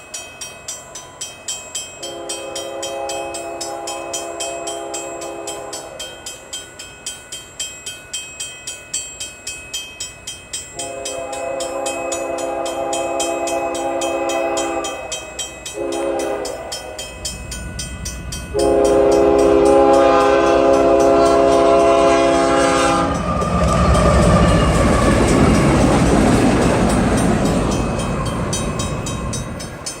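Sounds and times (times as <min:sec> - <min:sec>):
train rumbling past: 0:00.0 - 0:08.4, 0:09.4 - 0:30.0
crossing bell ringing: 0:00.0 - 0:30.0
train horn blasts: 0:02.0 - 0:06.1, 0:10.8 - 0:17.2, 0:18.5 - 0:25.7.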